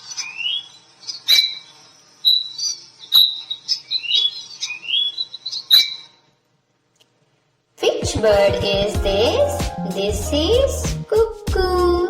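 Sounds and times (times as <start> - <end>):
quail chirping: 0.0 - 6.2.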